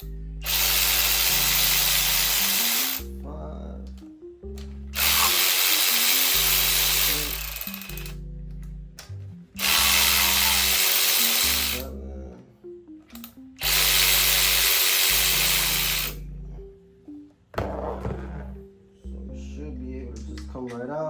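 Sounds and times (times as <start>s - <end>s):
background music: 0.0s - 21.0s
cordless power tool spinning: 0.4s - 3.0s, 5.0s - 8.2s, 9.6s - 11.8s, 13.6s - 16.2s.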